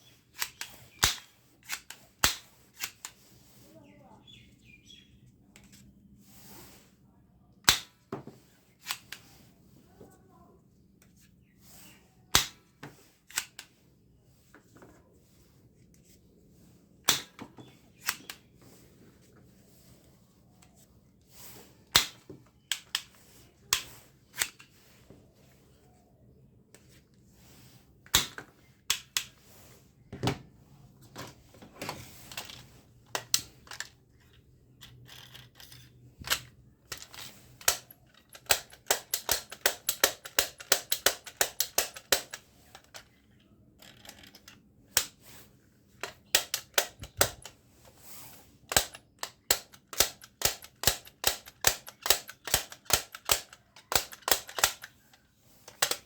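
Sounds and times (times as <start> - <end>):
plastic toy gun clicking: 0.3 - 3.2, 7.6 - 8.0, 8.8 - 9.3, 12.3 - 13.8, 17.1 - 18.5, 21.9 - 24.8, 28.1 - 29.4, 32.3 - 43.2, 43.8 - 45.2, 46.0 - 47.6, 48.7 - 56.0.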